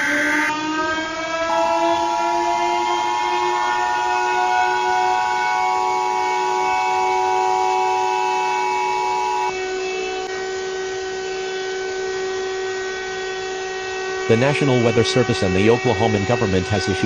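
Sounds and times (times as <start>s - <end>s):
held electronic alert tones: 0.0s - 0.5s.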